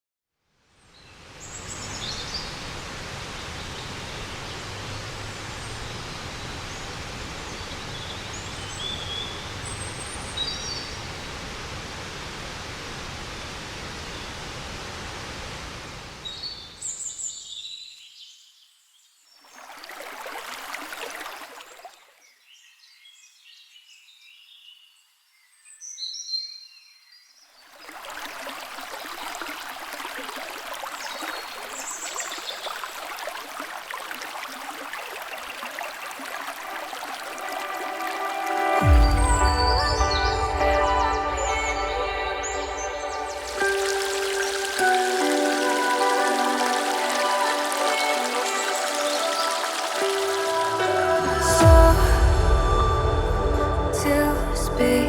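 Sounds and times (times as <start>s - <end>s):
waterfall rushing: 1.2s - 17.0s, 32.8s - 55.0s
birds chirping: 37.5s - 51.4s.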